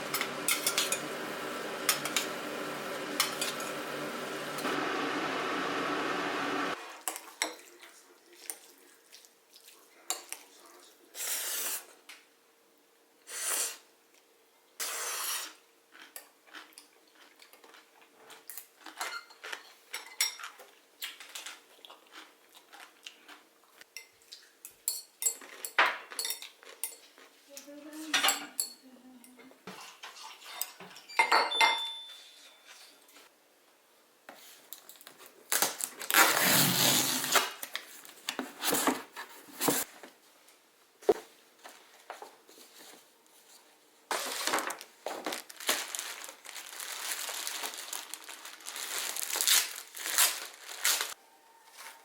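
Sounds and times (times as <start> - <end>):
dishes and cutlery clinking: 0.1 - 1.1, 3.2 - 3.8, 19.0 - 20.6, 24.0 - 27.2, 29.7 - 32.9.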